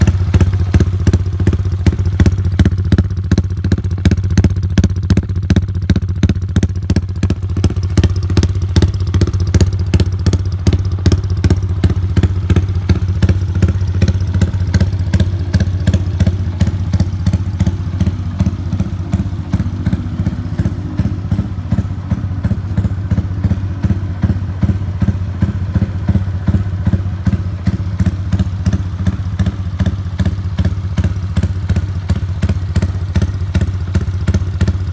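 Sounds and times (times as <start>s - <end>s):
engine idling: 0.0s - 34.9s.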